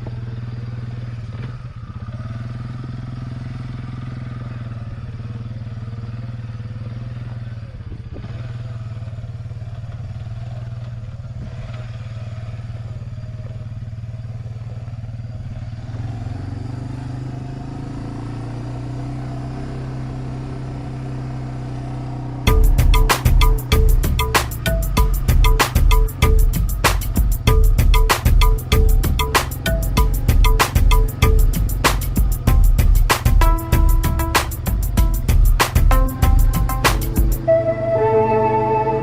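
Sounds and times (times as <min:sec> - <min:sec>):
atv engine running: 0:00.0 - 0:38.1
loud music: 0:22.5 - 0:39.0.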